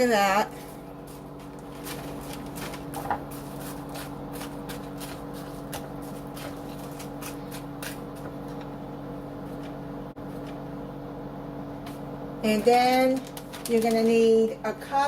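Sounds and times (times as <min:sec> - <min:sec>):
steady low hum: 0:00.0 - 0:15.0
plastic bag crinkling: 0:00.6 - 0:07.6, 0:12.8 - 0:14.5.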